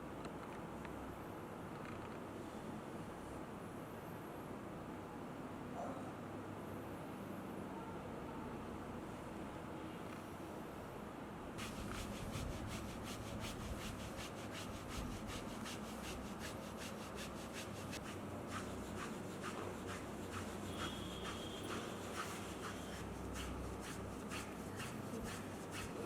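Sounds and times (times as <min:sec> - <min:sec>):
hands rubbing skin: 0:11.6 - 0:26.0.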